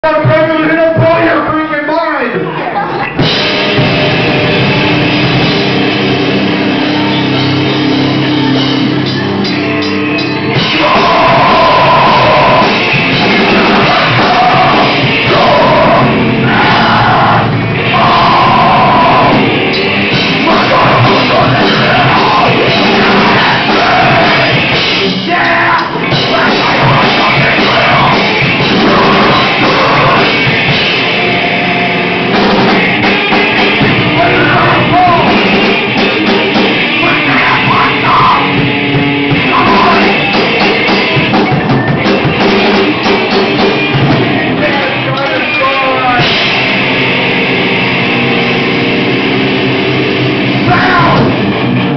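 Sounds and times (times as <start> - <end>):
rock band playing heavy music: 0.0 - 51.9
vocalist singing: 10.4 - 31.4, 33.1 - 35.6, 36.8 - 38.7, 39.3 - 42.4, 50.6 - 51.4.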